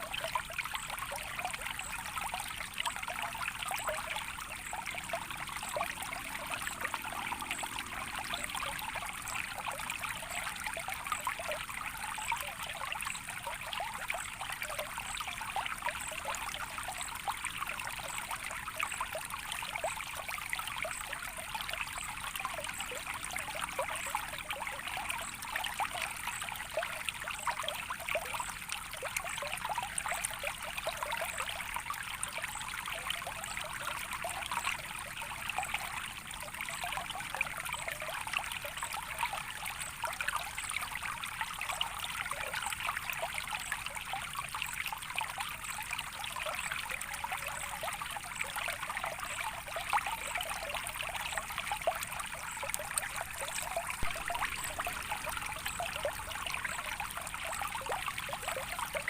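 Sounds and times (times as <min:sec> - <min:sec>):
stream trickling: 0:00.0 - 0:59.0.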